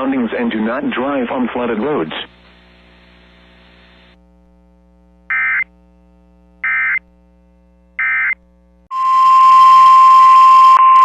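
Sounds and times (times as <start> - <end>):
faint hum: 0.0 - 11.0
digital data tone bursts: 8.0 - 11.0.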